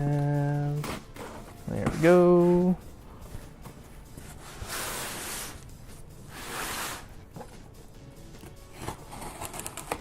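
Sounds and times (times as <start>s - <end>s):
cardboard box rustling and scraping: 3.3s - 5.7s.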